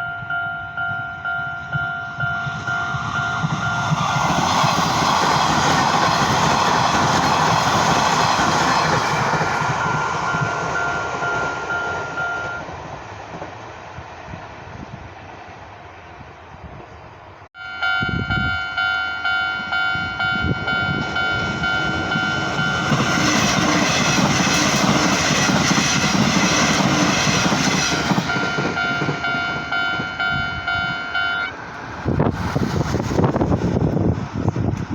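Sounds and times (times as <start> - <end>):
train passing: 0.0 - 34.9
level crossing bell dinging: 17.6 - 23.1, 28.3 - 31.6.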